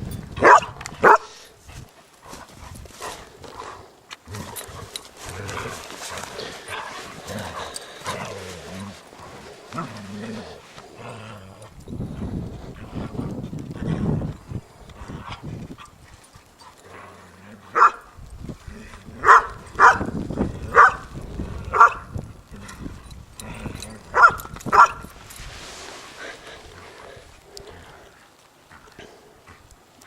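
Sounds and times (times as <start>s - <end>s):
dog barking: 0.4s - 1.3s, 17.8s - 18.0s, 19.2s - 20.1s, 20.7s - 21.0s, 21.7s - 22.0s, 24.2s - 25.1s.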